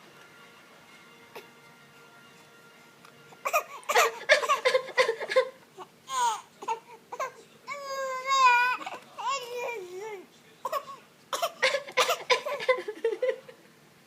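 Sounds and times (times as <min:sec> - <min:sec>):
baby fake crying: 0:03.4 - 0:10.1.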